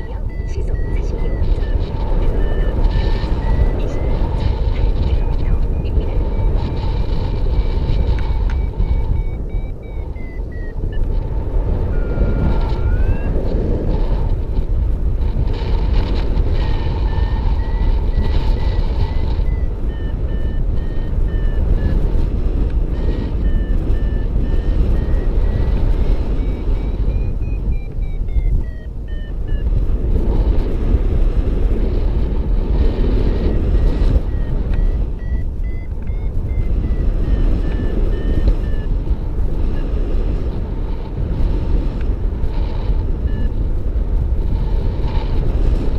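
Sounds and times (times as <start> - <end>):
variometer beeping: 0.0 - 45.9
wind rumble on microphone: 0.0 - 45.9.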